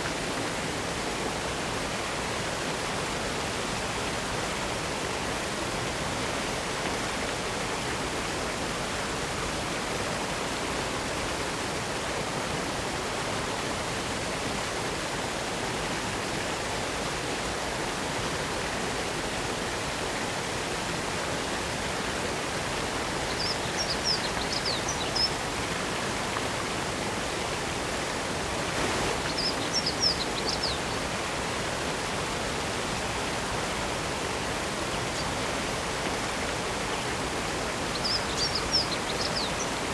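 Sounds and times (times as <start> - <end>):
waterfall rushing: 17.4 - 39.9.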